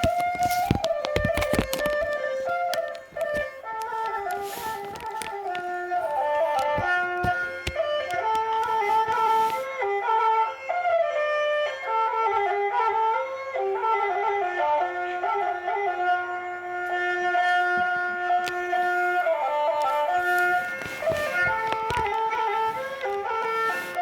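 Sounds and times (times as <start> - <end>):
flute playing slow melody: 0.0 - 11.2.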